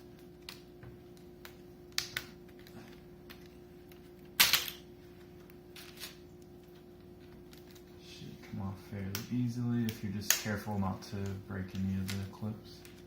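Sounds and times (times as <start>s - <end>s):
plastic clips clicking and snapping: 9.1s - 13.0s.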